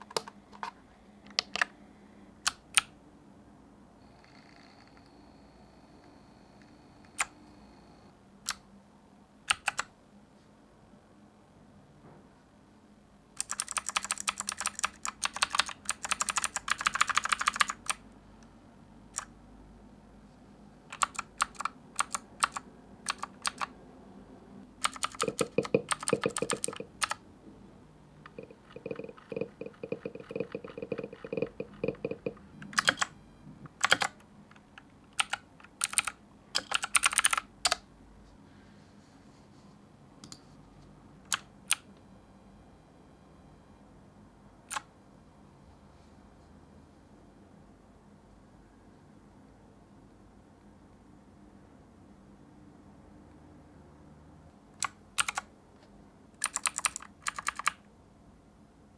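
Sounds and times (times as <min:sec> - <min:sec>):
clicky mechanical keyboard typing: 0:00.0 - 0:01.8, 0:02.4 - 0:02.9, 0:08.4 - 0:08.6, 0:09.5 - 0:09.9, 0:13.4 - 0:18.0, 0:19.1 - 0:19.3, 0:20.9 - 0:23.7, 0:24.8 - 0:27.2, 0:28.2 - 0:37.8, 0:41.3 - 0:41.9, 0:44.7 - 0:44.9, 0:54.8 - 0:55.5, 0:56.4 - 0:57.8.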